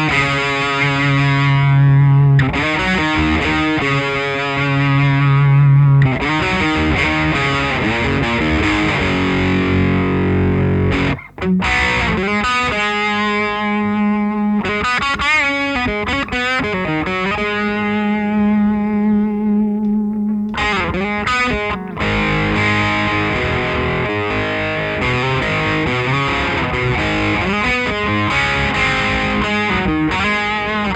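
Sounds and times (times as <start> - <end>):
overdriven electric guitar: 0.0 - 30.9.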